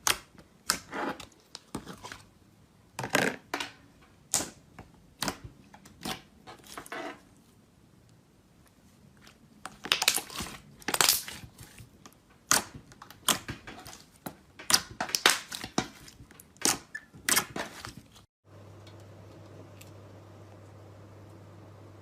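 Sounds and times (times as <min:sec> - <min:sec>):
slime squishing and popping: 0:09.6 - 0:11.8, 0:14.6 - 0:17.8
steady low hum: 0:18.5 - 0:22.0.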